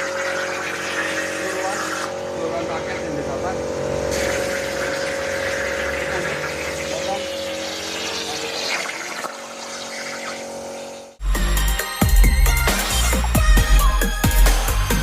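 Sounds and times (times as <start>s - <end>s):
plasma cutter arc hissing: 0.0s - 11.0s
steady whine: 0.0s - 15.0s.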